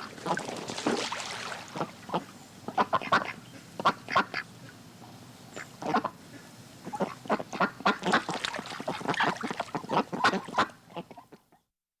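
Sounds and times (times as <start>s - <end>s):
ducks quacking: 1.7s - 4.8s, 5.6s - 11.4s.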